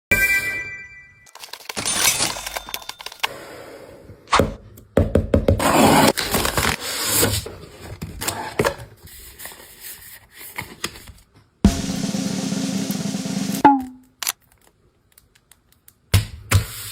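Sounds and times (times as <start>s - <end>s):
packaging crackling and tearing: 1.3s - 3.2s.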